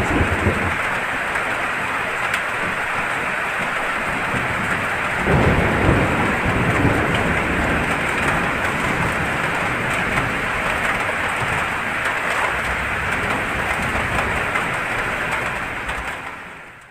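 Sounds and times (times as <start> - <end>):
thunder rumbling: 0.0 - 16.8
heavy rain falling: 0.0 - 16.9.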